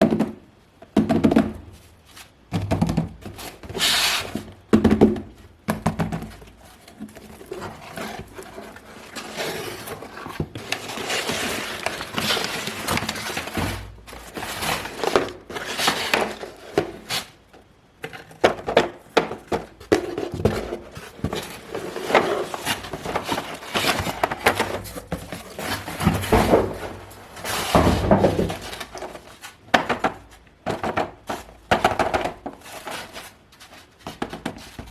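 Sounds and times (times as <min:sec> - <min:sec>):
cardboard and plastic thumps: 0:00.0 - 0:17.3, 0:18.0 - 0:34.9
packaging rustling and crinkling: 0:06.3 - 0:17.4, 0:18.1 - 0:34.9.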